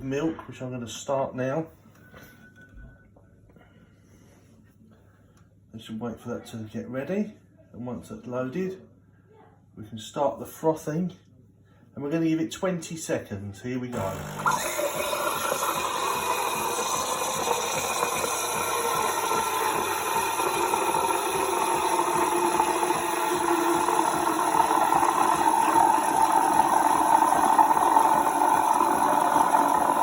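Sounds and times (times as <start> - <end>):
steam frother hissing in milk: 14.0 - 30.0.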